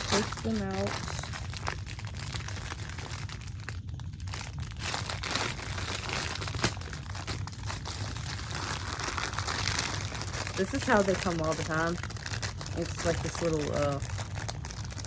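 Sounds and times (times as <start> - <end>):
plastic bag crinkling: 0.0 - 15.0.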